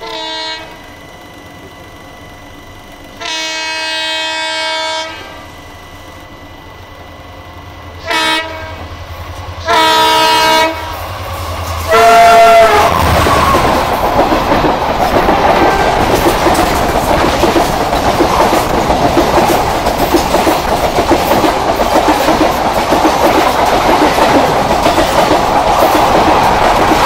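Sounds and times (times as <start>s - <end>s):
locomotive horn blasts: 0.0s - 0.8s, 3.2s - 5.5s, 8.0s - 8.9s, 9.6s - 11.0s, 11.9s - 13.7s
passing train rush: 0.0s - 27.0s
train rumble: 0.0s - 27.0s.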